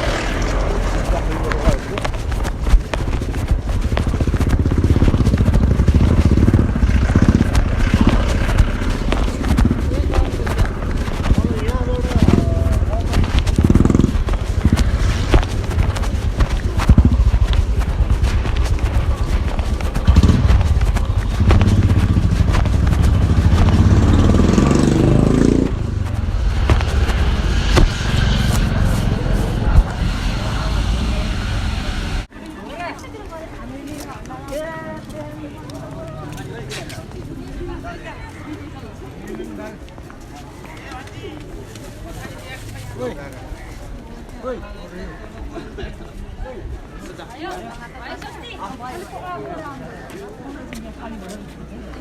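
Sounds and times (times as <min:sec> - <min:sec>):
motorcycle engine running: 0:00.0 - 0:32.3
street traffic noise: 0:00.0 - 0:52.0.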